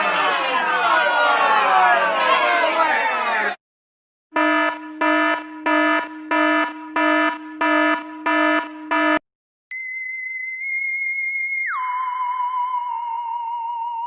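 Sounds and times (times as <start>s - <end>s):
electronic alarm buzzer pulses: 4.3s - 9.2s
steady high electronic tone: 4.4s - 9.2s.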